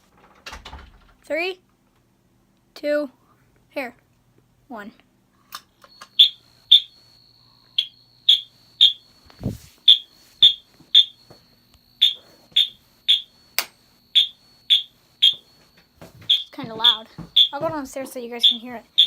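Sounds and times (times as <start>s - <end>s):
faint steady high tone: 5.6s - 19.0s
fire alarm horn blasts: 5.9s - 17.7s, 18.3s - 19.0s.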